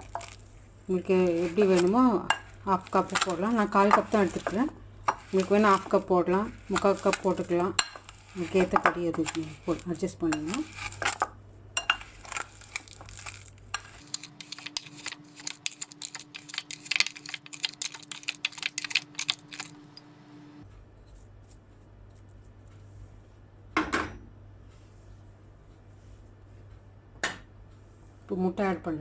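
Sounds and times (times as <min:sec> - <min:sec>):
metal spoon clinking against bowl: 0:01.3 - 0:06.0, 0:06.6 - 0:20.1.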